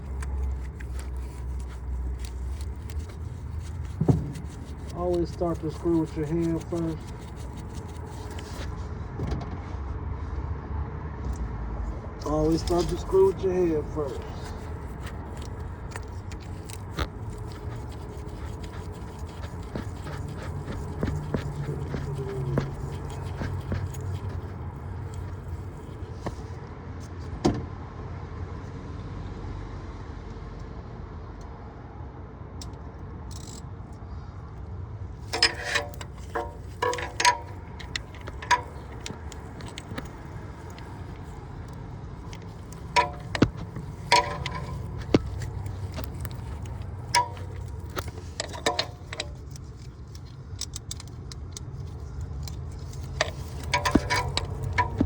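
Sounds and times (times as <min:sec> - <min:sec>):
metal hand tools clinking: 0:12.3 - 0:25.9, 0:35.3 - 0:49.6, 0:52.8 - 0:55.0.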